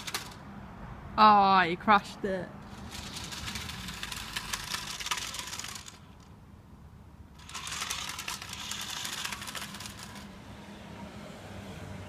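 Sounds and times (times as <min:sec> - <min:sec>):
toy car clicking and rattling: 0:00.0 - 0:00.4, 0:02.6 - 0:06.4, 0:07.3 - 0:10.3.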